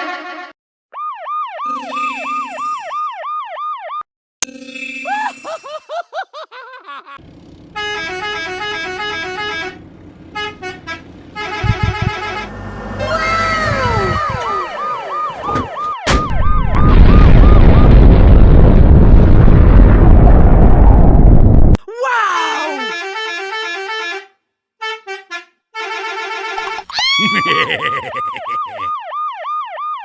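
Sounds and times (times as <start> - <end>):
school bus horn blare: 0.0 - 0.5, 7.7 - 13.8, 22.8 - 26.8
police siren yelping: 1.0 - 4.0, 14.0 - 16.9, 26.9 - 30.0.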